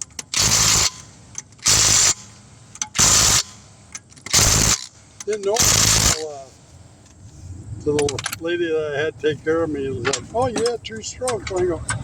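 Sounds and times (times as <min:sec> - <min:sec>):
impact wrench bursts: 0:00.0 - 0:06.4.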